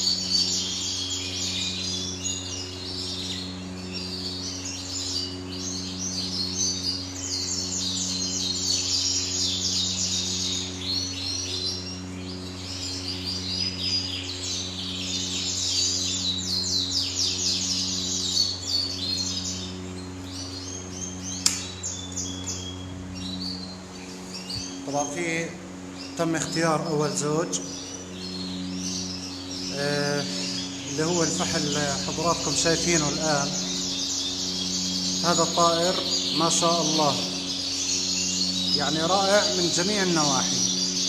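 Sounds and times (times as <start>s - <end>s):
canaries chirping and singing: 0.0s - 41.0s
pulsing electrical hum: 0.0s - 41.0s
sharp click: 21.4s - 21.7s.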